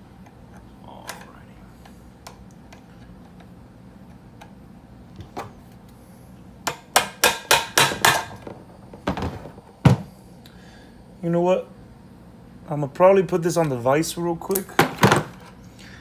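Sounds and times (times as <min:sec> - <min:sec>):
hammer striking metal pin: 0:06.7 - 0:08.3.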